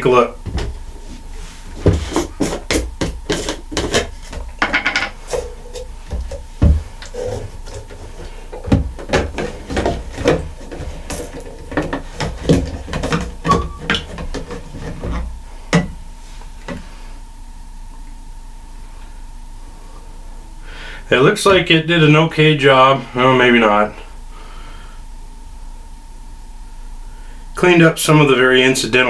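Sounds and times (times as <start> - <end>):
heavier thumps: 1.7 - 14.6.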